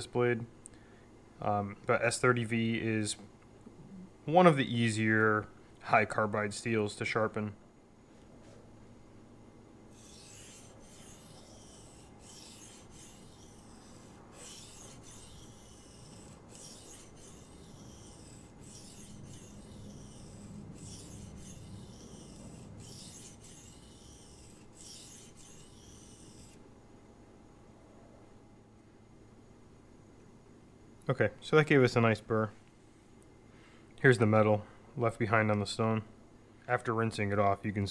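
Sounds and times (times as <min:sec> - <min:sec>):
knife scraping on whetstone: 0:09.9 - 0:26.6.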